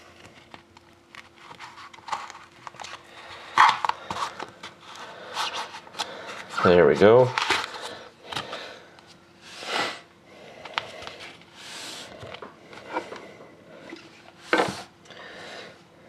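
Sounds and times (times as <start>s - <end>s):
cards sliding and rubbing: 0.1s - 8.5s.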